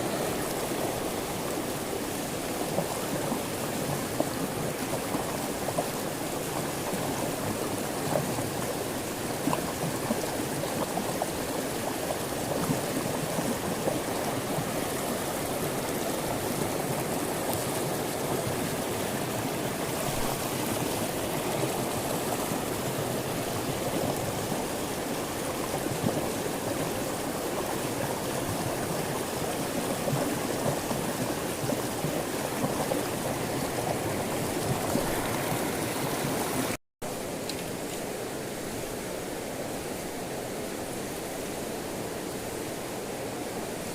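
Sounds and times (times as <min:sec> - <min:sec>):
river water rushing: 0:00.0 - 0:43.9.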